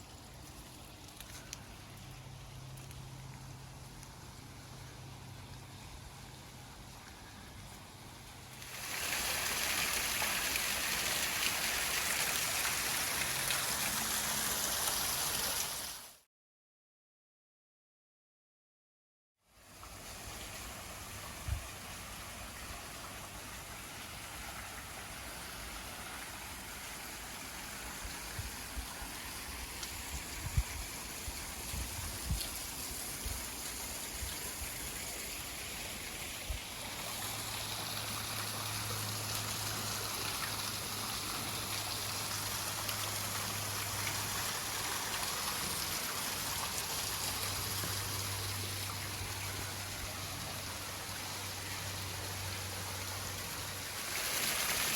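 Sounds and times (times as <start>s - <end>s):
waterfall splashing: 8.6s - 16.0s, 33.5s - 54.9s.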